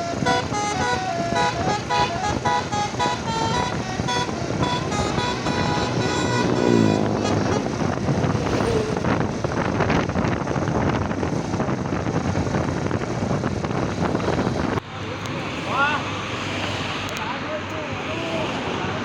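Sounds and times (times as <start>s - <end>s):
musical bus horn tune: 0.0s - 8.3s
bus passing by: 0.0s - 19.0s.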